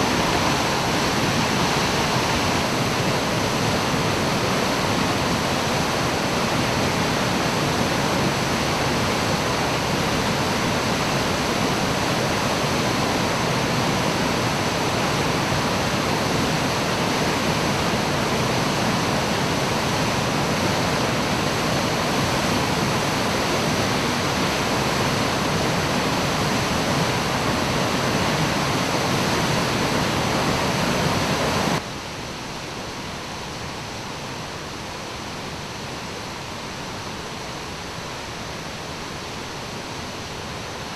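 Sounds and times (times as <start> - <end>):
waterfall rushing: 0.0 - 40.9.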